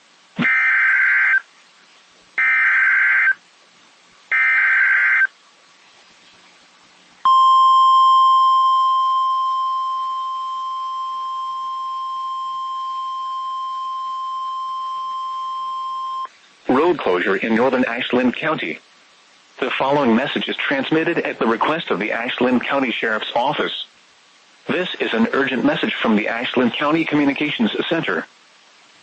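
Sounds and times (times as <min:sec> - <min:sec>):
piercing warning alarm tone: 0:00.4 - 0:01.4, 0:02.4 - 0:03.4, 0:04.3 - 0:05.3, 0:07.3 - 0:16.3.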